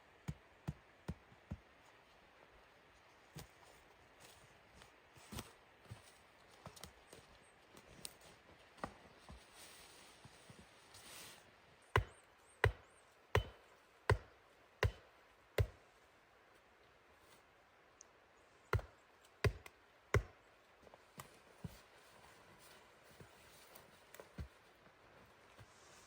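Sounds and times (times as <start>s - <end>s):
wood being chopped: 12.0s - 15.8s, 18.7s - 20.4s.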